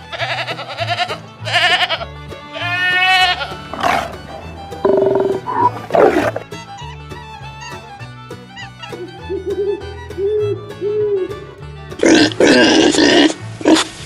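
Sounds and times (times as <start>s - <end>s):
quavering bleats: 0.0s - 6.5s, 12.0s - 13.9s
background music with bass line: 0.0s - 14.0s.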